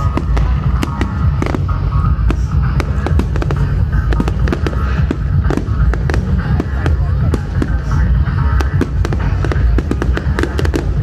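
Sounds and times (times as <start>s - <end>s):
fireworks cracking and banging: 0.0s - 11.0s
low rumble: 0.0s - 11.0s.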